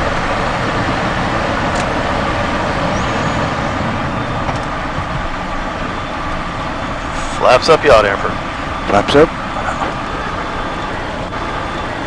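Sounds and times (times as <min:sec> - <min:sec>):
jet engines and airflow rushing: 0:00.0 - 0:12.0
faint steady whine: 0:02.8 - 0:12.0.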